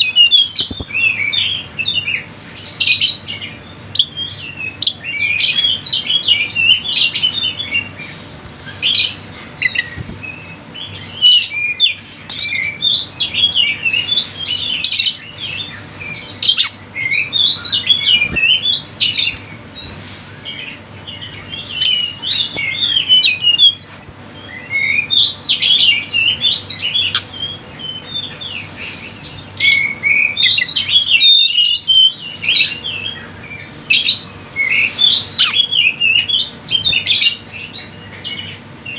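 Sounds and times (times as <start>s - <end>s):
songbirds chirping and twittering: 0.0s - 38.9s.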